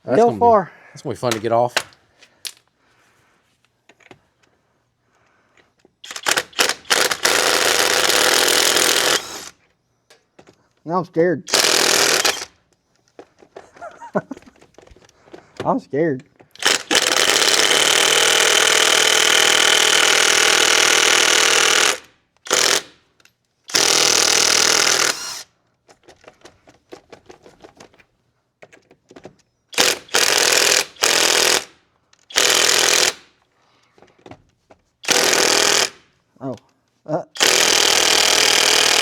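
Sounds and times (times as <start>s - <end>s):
impact wrench hammering: 37.4s - 39.0s.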